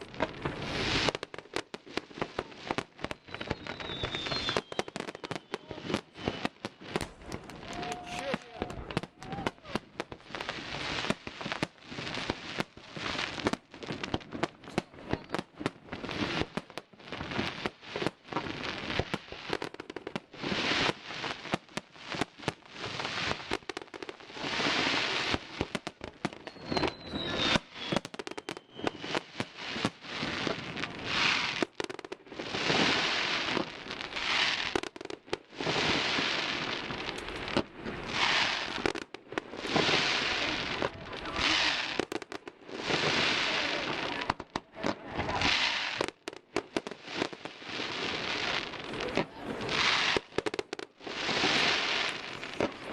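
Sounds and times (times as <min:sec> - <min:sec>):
firework bangs and crackles: 0:00.0 - 0:52.9
hissing crackling firework bursts: 0:00.0 - 0:52.9
falling firework whistle: 0:03.0 - 0:09.9, 0:14.7 - 0:15.5, 0:26.2 - 0:29.2.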